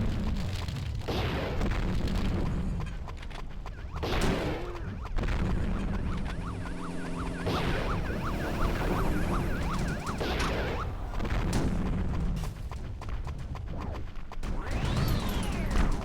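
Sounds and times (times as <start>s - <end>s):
repeating pitched pattern: 3.7s - 11.4s
echoing gunshots: 3.8s - 12.4s.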